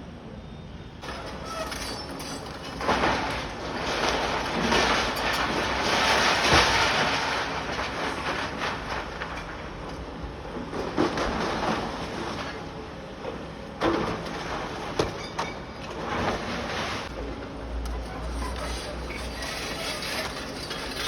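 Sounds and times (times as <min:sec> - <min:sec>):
heavy machinery rough mechanical noise: 0:01.0 - 0:21.0.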